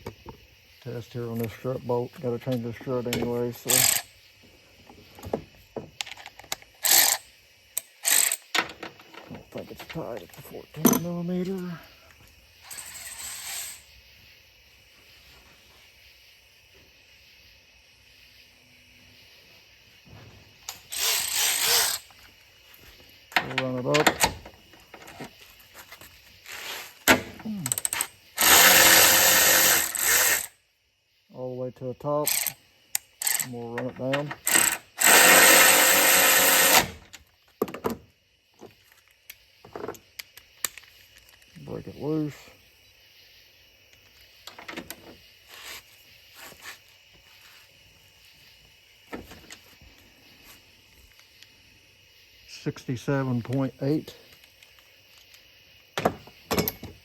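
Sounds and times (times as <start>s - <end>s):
cordless ratchet spinning a bolt: 3.7s - 4.1s, 6.8s - 7.2s, 7.8s - 8.5s, 20.9s - 22.1s, 27.9s - 30.5s, 34.5s - 37.0s.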